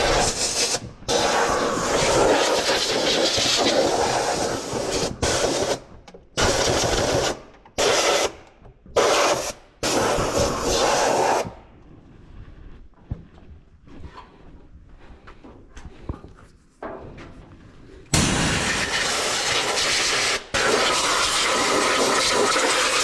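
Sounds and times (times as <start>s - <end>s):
air blow gun hissing: 0.0s - 5.8s, 9.0s - 11.6s, 18.1s - 23.0s.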